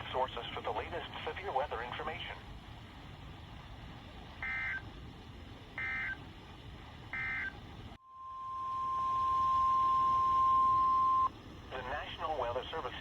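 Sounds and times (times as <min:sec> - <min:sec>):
steady alarm tone: 0:07.2 - 0:11.3.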